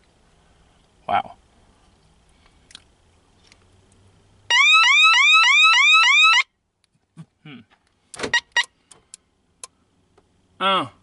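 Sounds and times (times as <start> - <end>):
car alarm siren whooping: 4.5 - 6.5.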